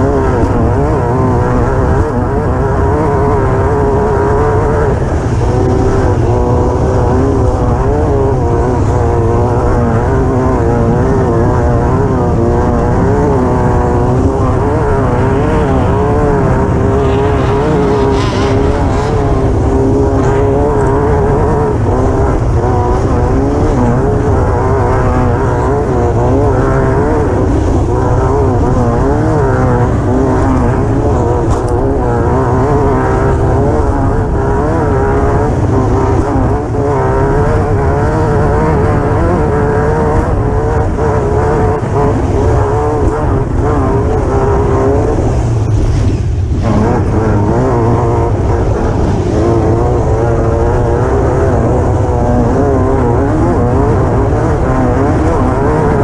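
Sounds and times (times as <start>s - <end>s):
race buggy engine revving: 0.0s - 56.0s
wind and rough ground noise: 0.0s - 56.0s.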